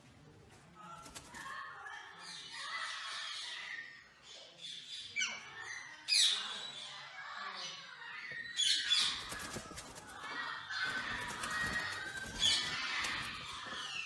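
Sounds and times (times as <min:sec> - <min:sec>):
parrots squawking and screeching: 0:10.2 - 0:14.0.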